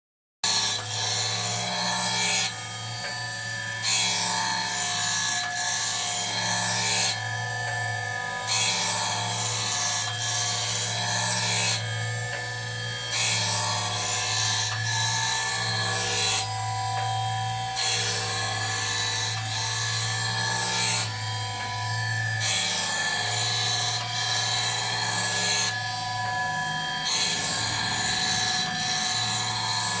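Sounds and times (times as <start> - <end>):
sharpener grinding blade: 17.7 - 30.0.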